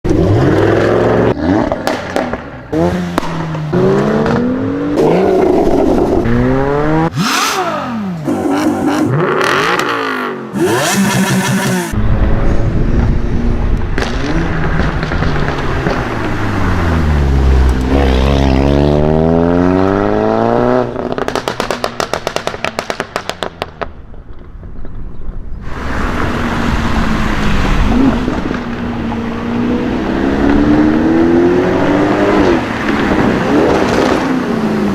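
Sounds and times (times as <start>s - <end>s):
sports car engines revving: 0.1s - 22.3s, 25.7s - 34.9s
exhaust pops and crackles: 1.7s - 2.5s, 13.7s - 16.4s, 21.0s - 25.5s.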